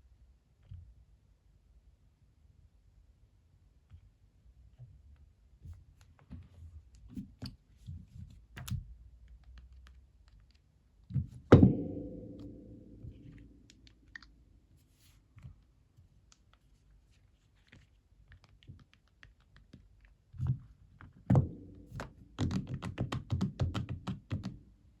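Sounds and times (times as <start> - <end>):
loud ringing thunk: 11.5 - 13.7.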